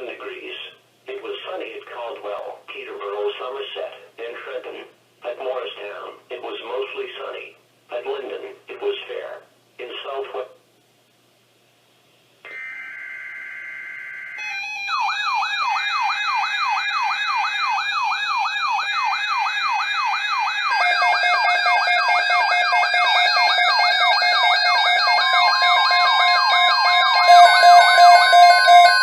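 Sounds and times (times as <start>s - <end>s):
falling siren-like alarm tone: 12.5s - 29.0s
steady low tone and beeps: 20.8s - 29.0s.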